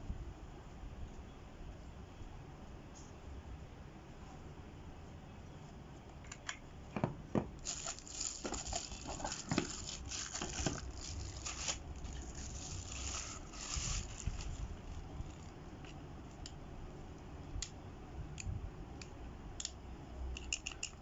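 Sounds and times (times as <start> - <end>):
packaging rustling and crinkling: 7.6 - 15.6.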